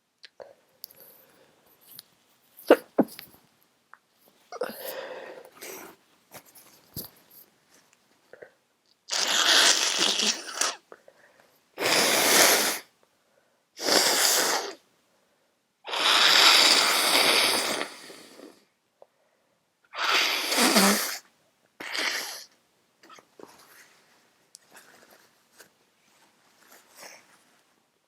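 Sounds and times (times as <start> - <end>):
person sneezing: 2.7 - 3.3.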